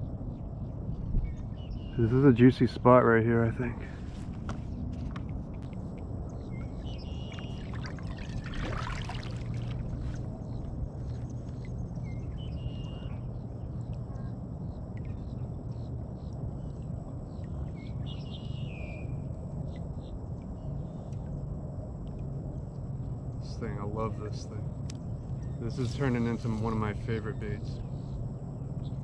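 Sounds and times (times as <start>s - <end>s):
steady low rumble: 0.0s - 29.0s
water trickling and lapping: 3.8s - 18.2s, 24.7s - 27.3s
water splashing rush: 7.4s - 10.4s.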